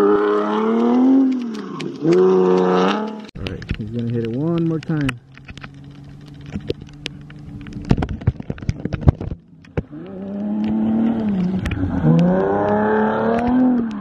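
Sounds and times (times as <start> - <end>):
car engine revving hard: 10.2 - 14.0.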